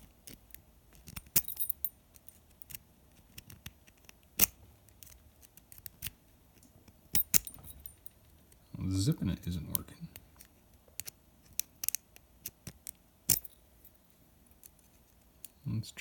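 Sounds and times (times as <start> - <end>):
lock pick clicking in padlock: 0.2 - 6.1, 7.1 - 8.0, 11.0 - 13.6.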